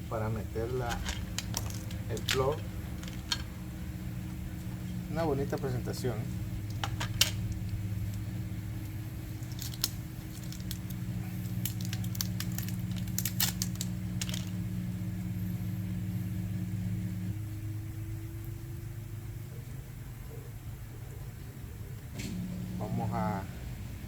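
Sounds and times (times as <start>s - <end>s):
steady low hum: 0.0s - 24.0s
small parts clicking: 0.8s - 3.6s, 6.6s - 8.3s, 9.3s - 14.6s.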